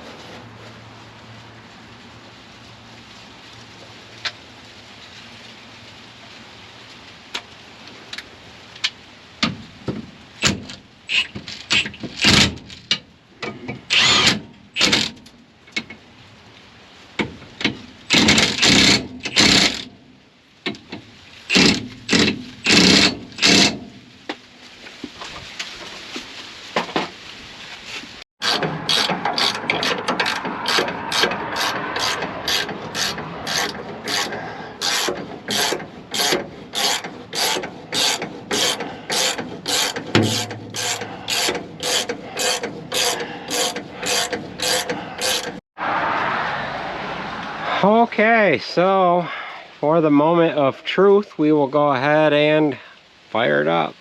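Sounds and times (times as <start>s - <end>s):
ratchet wrench strokes: 10.4s - 12.4s, 13.9s - 15.1s, 18.1s - 19.9s, 21.5s - 23.8s, 28.4s - 45.6s.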